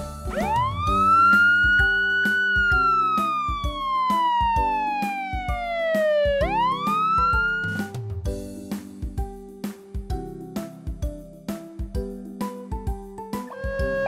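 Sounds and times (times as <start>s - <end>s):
upbeat children's music: 0.0s - 14.0s
emergency siren wailing: 0.3s - 8.0s, 13.6s - 14.0s.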